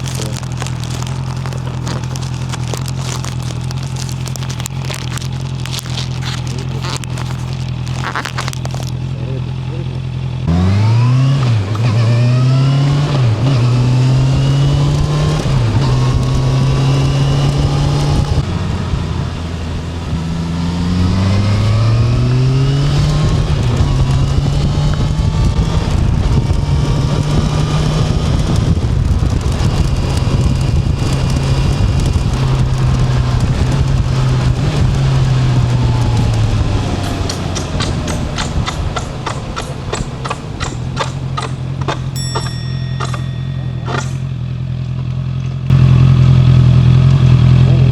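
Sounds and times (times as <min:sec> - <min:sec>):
motorcycle engine accelerating: 0:00.0 - 0:47.9.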